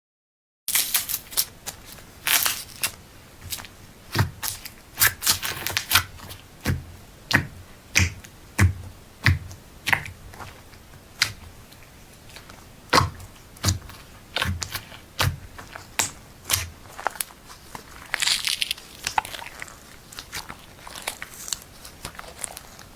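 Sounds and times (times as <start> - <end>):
slime squeezed with wet pops: 3.5 - 10.6.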